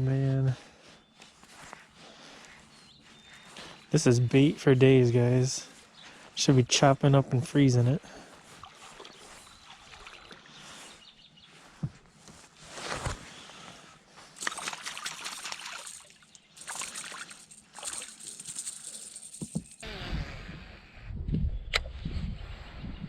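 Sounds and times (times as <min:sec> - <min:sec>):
water splashing and trickling: 0:08.4 - 0:10.8, 0:14.4 - 0:19.8.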